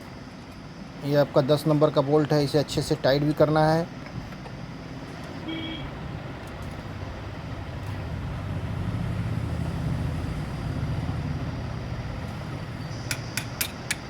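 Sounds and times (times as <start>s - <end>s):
motor vehicle rumble: 3.9s - 14.0s.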